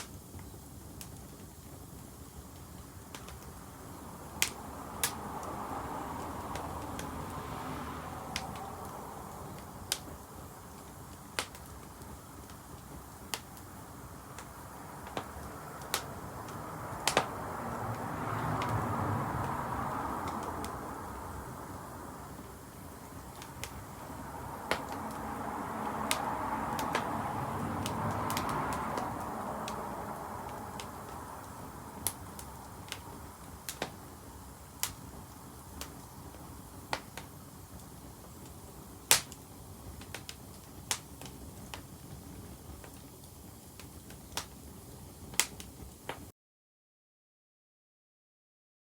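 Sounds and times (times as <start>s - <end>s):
wood fire crackling and popping: 0.0s - 46.3s
steady rushing noise: 2.8s - 42.4s.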